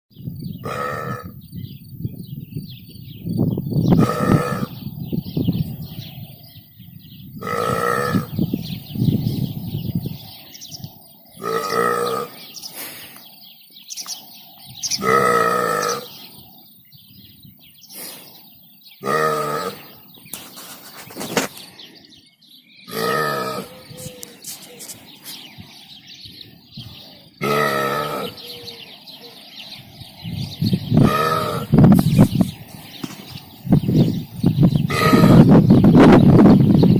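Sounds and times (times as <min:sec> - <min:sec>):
person burping loudly: 0:00.6 - 0:01.4, 0:04.0 - 0:04.7, 0:07.4 - 0:08.3, 0:11.4 - 0:12.4, 0:15.0 - 0:16.1, 0:19.0 - 0:19.9, 0:22.9 - 0:23.8, 0:27.4 - 0:28.4, 0:31.0 - 0:31.7, 0:34.9 - 0:35.5.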